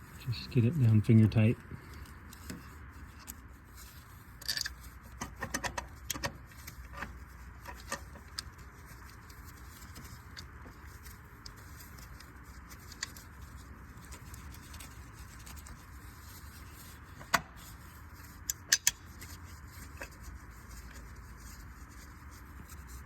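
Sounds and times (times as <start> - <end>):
steady low hum: 0.0 - 23.0
metal parts clicking: 4.4 - 4.8.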